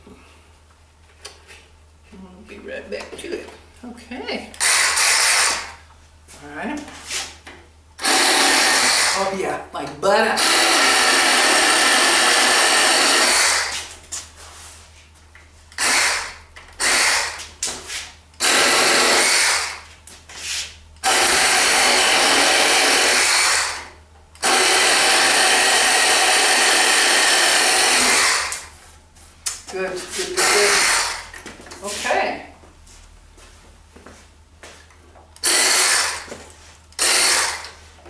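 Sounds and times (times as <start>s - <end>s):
battery hacksaw cutting wood: 4.6s - 5.8s, 8.0s - 9.4s, 10.4s - 13.9s, 15.8s - 17.4s, 18.4s - 19.8s, 21.0s - 28.7s, 30.2s - 31.4s, 35.4s - 36.3s, 37.0s - 37.8s.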